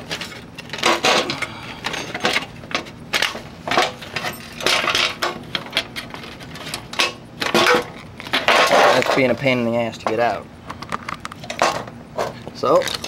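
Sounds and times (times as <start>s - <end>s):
metallic clanks and rattles: 0.0s - 9.4s.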